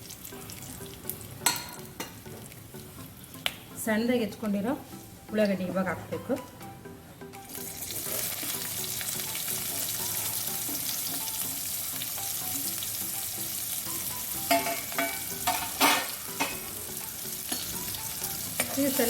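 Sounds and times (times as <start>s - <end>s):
onion sizzling in hot oil: 0.0s - 3.6s, 7.4s - 19.0s.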